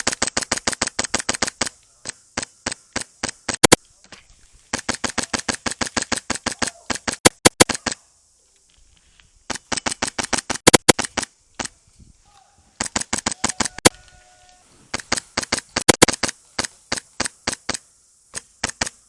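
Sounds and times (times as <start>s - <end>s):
airsoft rifle firing bursts: 0.0s - 1.7s, 4.7s - 8.0s, 9.5s - 11.3s, 14.9s - 17.8s.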